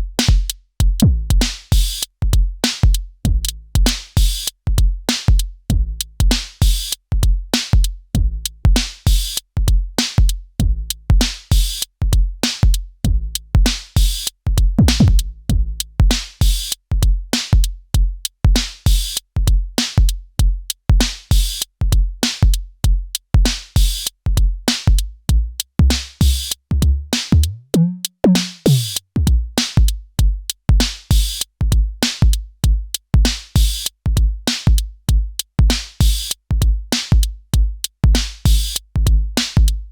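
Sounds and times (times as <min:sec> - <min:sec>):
electronic drum pattern: 0:27.4 - 0:29.0.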